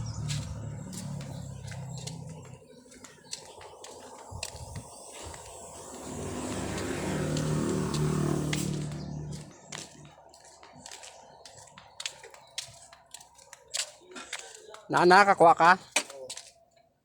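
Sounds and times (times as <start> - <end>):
diesel engine running at low revs: 0.0 - 10.5.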